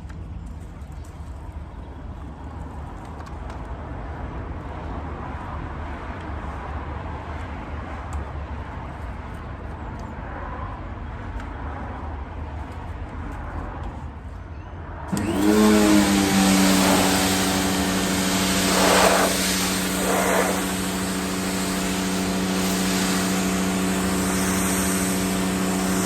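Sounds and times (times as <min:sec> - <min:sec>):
pressure washer motor humming: 0:15.1 - 0:26.0
water jet spraying: 0:15.1 - 0:26.0.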